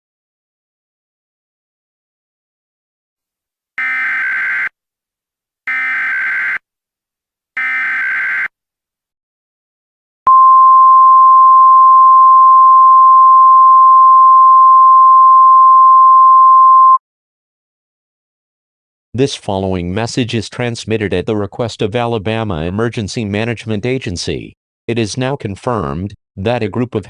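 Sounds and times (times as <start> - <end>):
steady warning alarm tone: 3.8 - 4.7, 5.7 - 6.6, 7.6 - 8.5.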